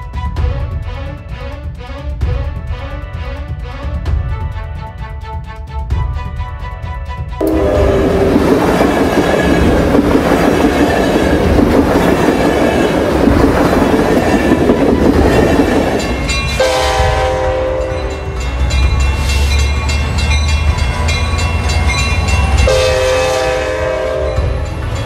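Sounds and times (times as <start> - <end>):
train horn: 0.0 - 10.0, 15.4 - 18.6, 22.4 - 24.8
train rumbling past: 0.0 - 25.0
wheels clattering on rails: 7.4 - 25.0.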